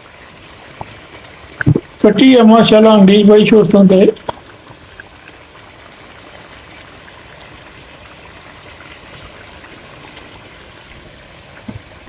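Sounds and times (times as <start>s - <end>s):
chicken sizzling in a pot: 4.4s - 12.0s.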